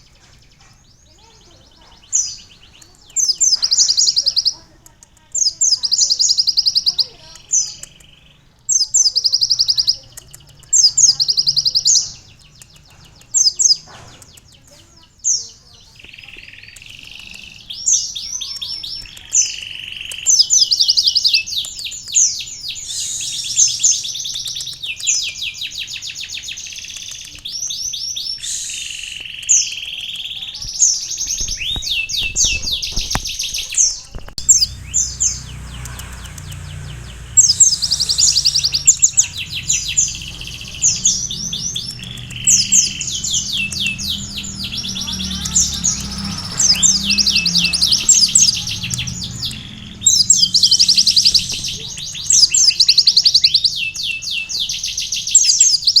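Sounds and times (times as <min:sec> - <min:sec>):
sunbird singing trills: 0:00.0 - 0:56.0
low rumble: 0:31.2 - 0:52.7.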